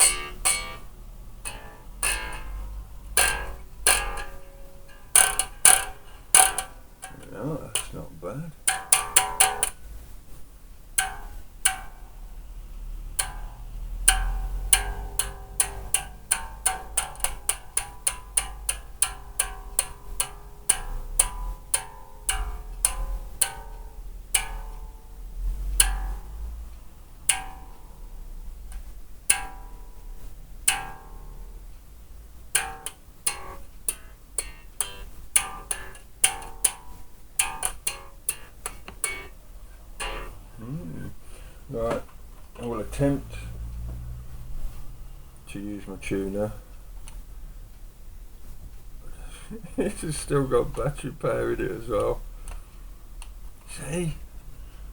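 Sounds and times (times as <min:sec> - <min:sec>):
electric bass notes plucked: 0:00.0 - 0:09.8, 0:10.9 - 0:31.7, 0:32.5 - 0:42.0.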